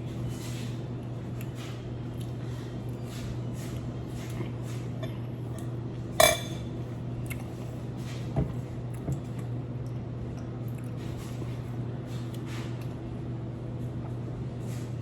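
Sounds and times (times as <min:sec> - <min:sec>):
steady low hum: 0:00.0 - 0:15.0
cutlery clinking against dish: 0:06.2 - 0:06.7.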